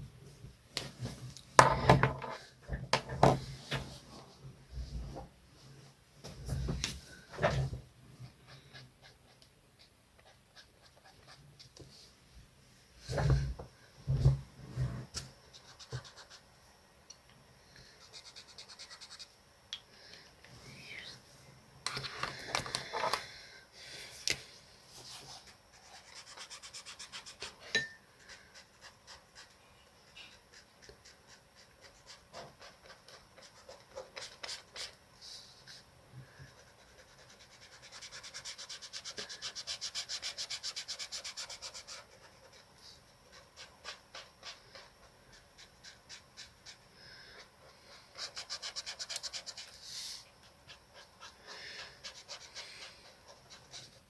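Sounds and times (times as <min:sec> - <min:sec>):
coloring strokes scratching paper: 0:15.5 - 0:16.4, 0:18.0 - 0:19.3, 0:25.0 - 0:27.6, 0:28.2 - 0:35.8, 0:36.5 - 0:54.0.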